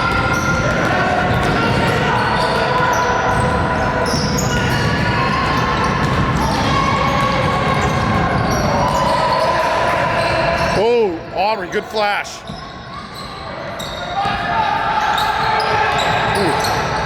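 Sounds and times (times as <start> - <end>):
spectators' voices echoing: 0.0 - 12.6, 13.5 - 17.0
shoe squeaks: 15.1 - 17.0.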